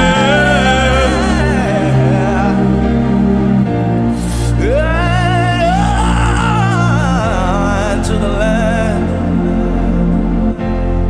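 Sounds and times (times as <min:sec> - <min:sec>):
slow atmospheric worship music: 0:00.0 - 0:11.0.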